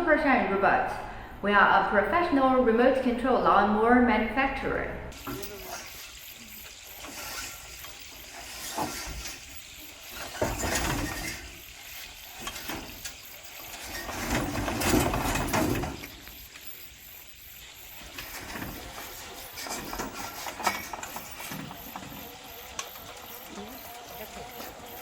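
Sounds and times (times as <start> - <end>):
lawn mower engine running: 5.1 - 25.0.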